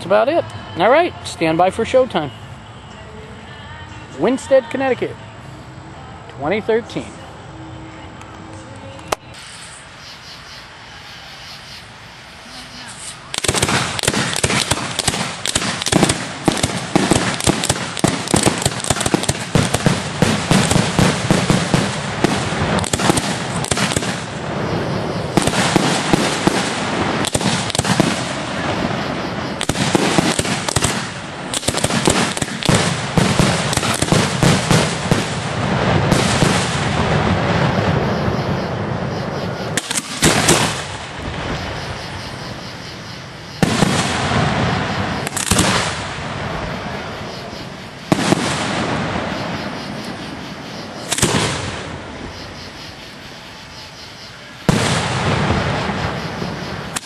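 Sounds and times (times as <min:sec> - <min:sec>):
firework crackle: 0:09.0 - 0:57.0
firework shell launches: 0:09.1 - 0:10.0, 0:13.0 - 0:24.4, 0:39.8 - 0:41.5, 0:43.6 - 0:46.3
booming firework bursts: 0:13.2 - 0:52.7, 0:54.6 - 0:57.0.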